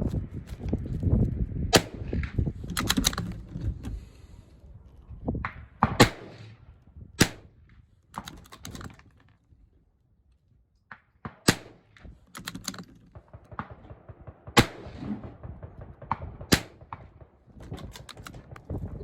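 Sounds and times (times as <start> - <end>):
wind buffeting microphone: 0.0 - 9.7, 12.0 - 19.0
gunshots: 1.7 - 3.2, 5.8 - 6.6, 11.2 - 12.0, 13.1 - 18.8.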